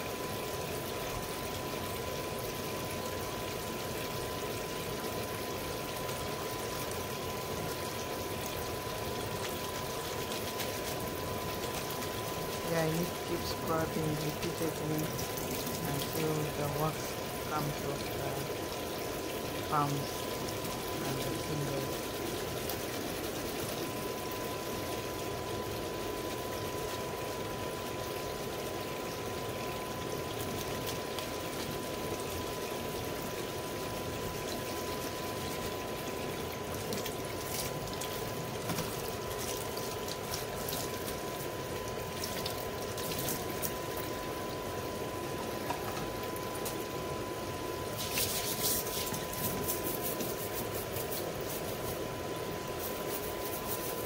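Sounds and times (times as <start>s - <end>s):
tap water running over hands: 8.4s - 24.2s, 36.3s - 44.3s, 47.9s - 52.1s.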